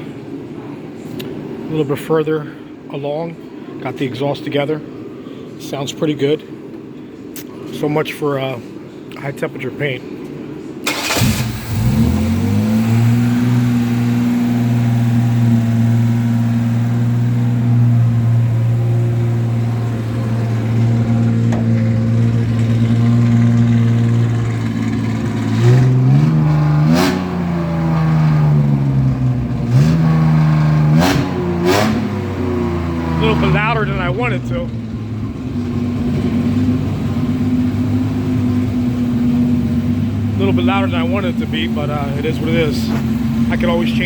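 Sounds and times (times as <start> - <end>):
car engine idling: 10.8 - 44.0
engine revving in short blips: 19.7 - 33.2.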